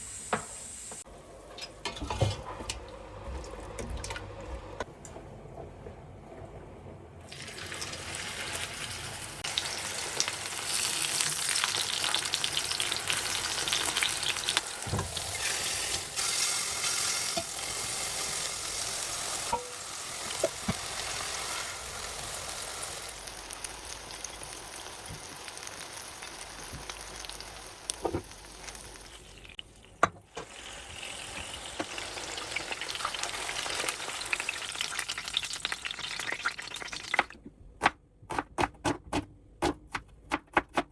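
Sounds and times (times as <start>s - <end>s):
food sizzling in hot oil: 7.3s - 29.6s, 30.5s - 37.2s.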